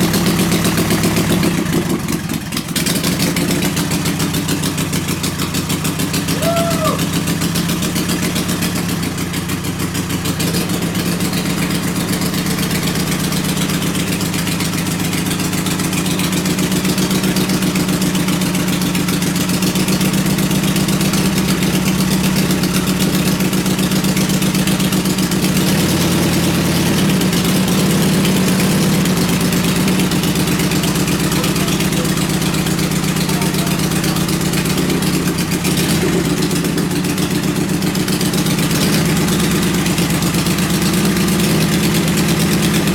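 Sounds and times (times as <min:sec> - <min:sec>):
racing engine idling: 0:00.0 - 0:42.9.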